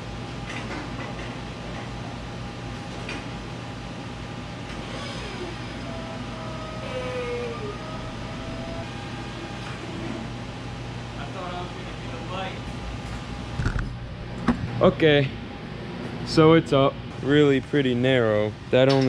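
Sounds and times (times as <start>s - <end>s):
scissor lift humming: 2.5s - 13.5s
squeaks gliding in pitch: 4.7s - 10.4s.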